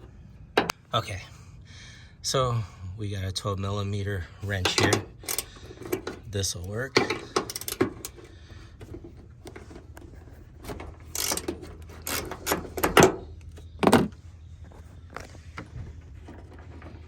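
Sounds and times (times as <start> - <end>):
wrench clicking and scraping metal: 4.6 - 13.6.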